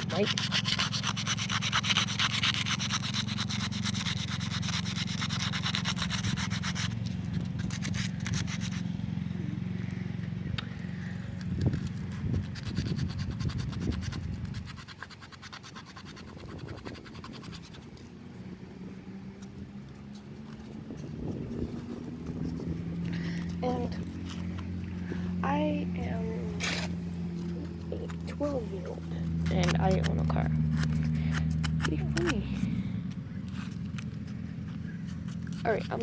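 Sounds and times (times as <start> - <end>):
sandpaper scrubbing on metal rim: 0.0 - 8.9, 11.5 - 18.1.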